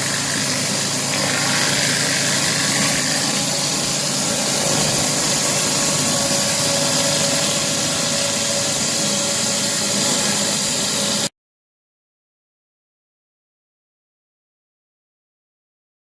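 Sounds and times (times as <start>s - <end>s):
hiss of spray: 0.0s - 11.3s
pressure washer running: 0.0s - 11.3s.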